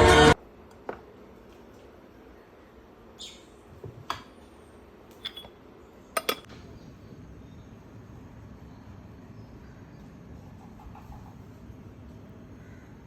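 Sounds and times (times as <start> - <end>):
glasses clinking: 6.2 - 6.5.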